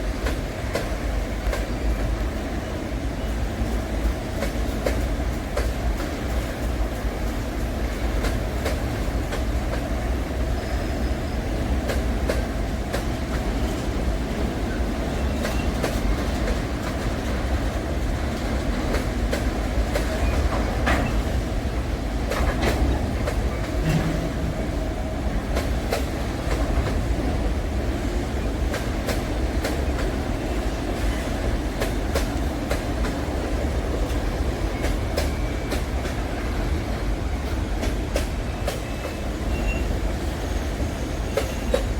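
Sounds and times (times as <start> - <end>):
freight train rumble: 0.0 - 41.9
faint wheel squeals: 10.6 - 11.5, 38.5 - 41.9
wheels clacking over rails: 11.8 - 27.4.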